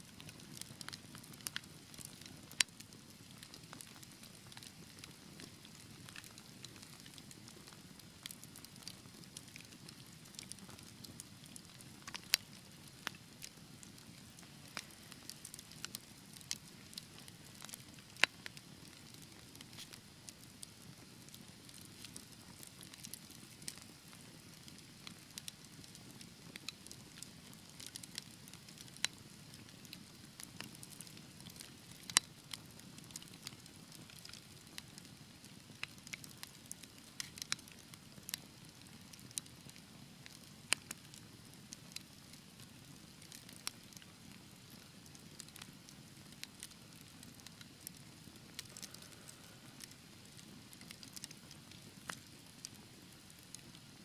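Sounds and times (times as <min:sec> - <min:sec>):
sharp pops and snaps of fire: 0:00.1 - 0:54.0
wood fire crackling: 0:00.1 - 0:54.0.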